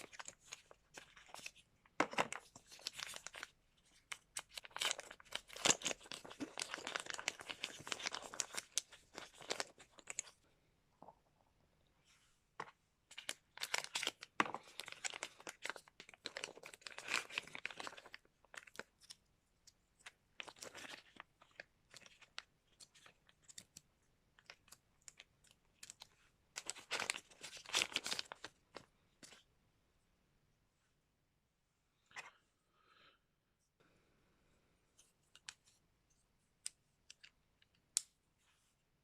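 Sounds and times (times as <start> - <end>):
wrapping crinkling: 2.2 - 10.4, 13.1 - 19.2, 24.4 - 29.4.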